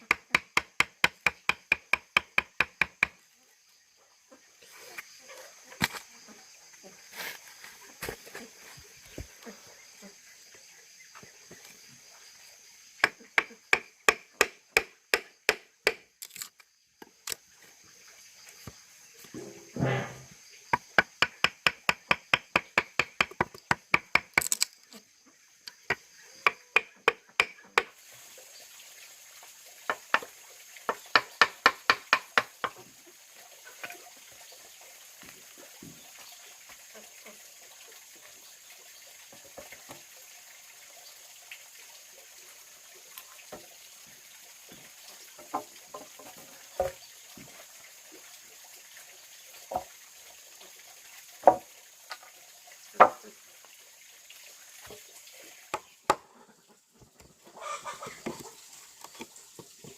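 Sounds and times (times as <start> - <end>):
rapid sharp knocks: 0.1 - 3.2.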